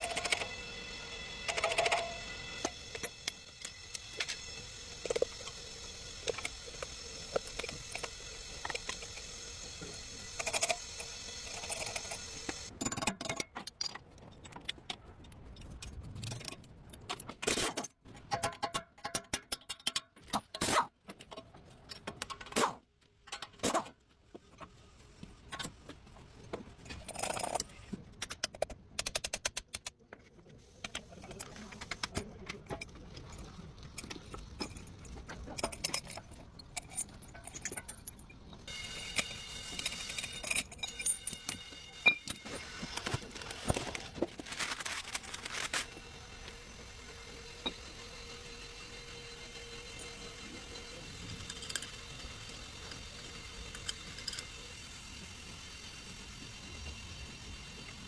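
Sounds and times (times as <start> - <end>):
metal tools clinking: 32.7 - 46.9.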